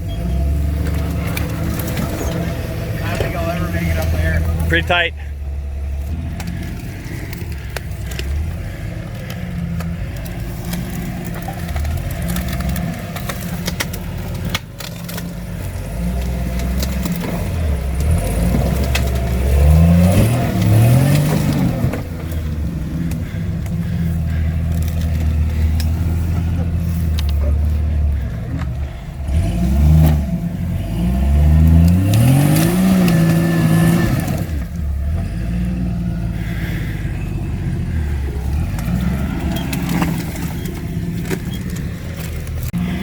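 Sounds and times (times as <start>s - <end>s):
off-road vehicle engine revving: 0.0s - 43.0s
knocks and scrapes on rocks: 38.0s - 42.9s.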